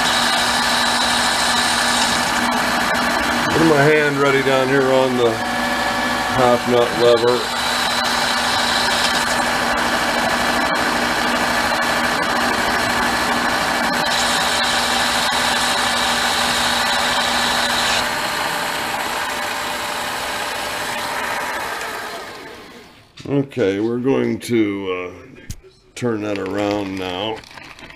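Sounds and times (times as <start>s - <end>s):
metal lathe running: 0.0s - 23.0s.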